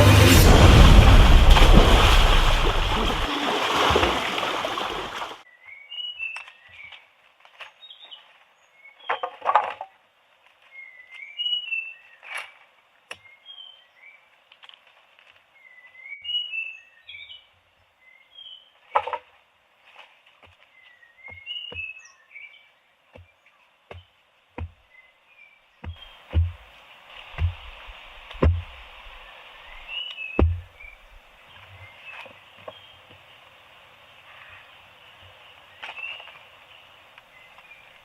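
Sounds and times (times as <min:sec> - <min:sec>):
small birds chirping: 0:20.6 - 0:26.6
knocks and bumps: 0:25.8 - 0:26.7, 0:27.4 - 0:29.2, 0:29.8 - 0:31.2.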